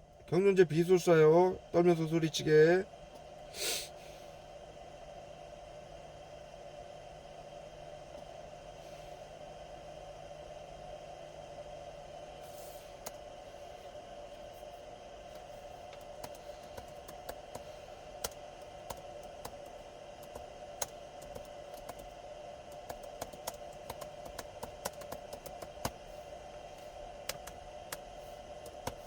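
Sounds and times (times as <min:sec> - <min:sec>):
steady low hum: 0:00.0 - 0:29.0
keyboard keystroke clicks: 0:15.4 - 0:26.0, 0:27.2 - 0:28.0, 0:28.6 - 0:29.0.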